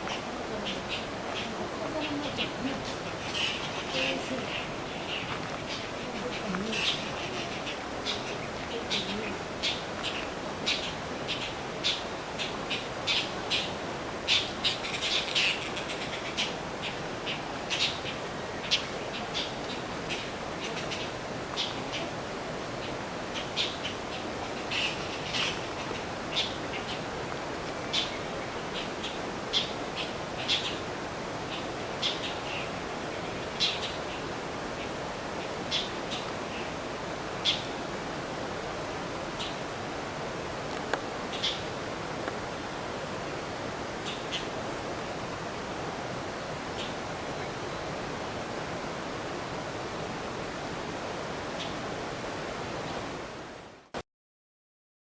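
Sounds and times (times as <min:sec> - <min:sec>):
harsh grating bird calls: 0:00.0 - 0:22.2
steady hiss: 0:00.0 - 0:54.0.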